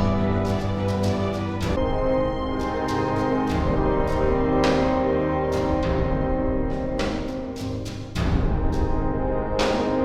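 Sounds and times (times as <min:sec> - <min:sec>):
dark orchestral music: 0:00.0 - 0:10.0
struck beats pulsing: 0:00.0 - 0:10.0.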